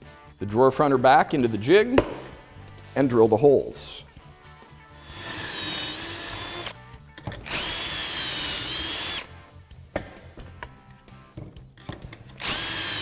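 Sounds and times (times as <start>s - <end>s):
drill whining: 4.8s - 9.4s, 12.3s - 13.0s.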